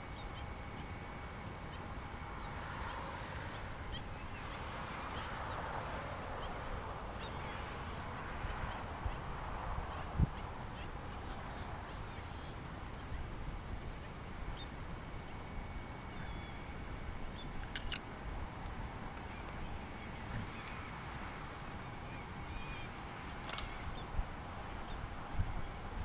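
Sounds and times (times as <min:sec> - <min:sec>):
sharp clicks: 0:17.6 - 0:18.1, 0:23.4 - 0:24.0.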